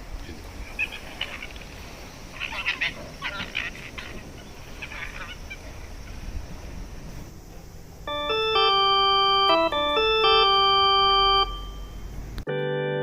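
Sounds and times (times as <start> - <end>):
electronic chime tune: 8.1 - 12.2
sustained organ-like chord: 8.1 - 13.0.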